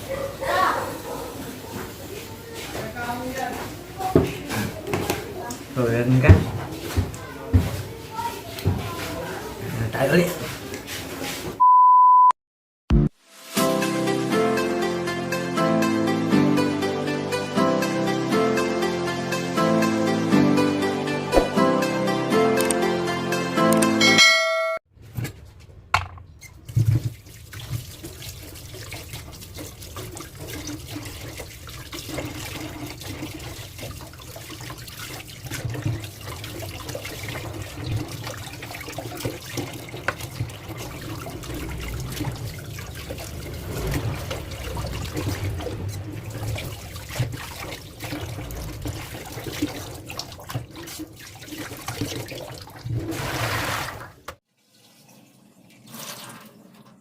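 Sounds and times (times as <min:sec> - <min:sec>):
tap water running into sink: 0:00.0 - 0:09.6, 0:26.6 - 0:57.0
short knocks and splashes: 0:06.1 - 0:09.2, 0:26.6 - 0:54.4.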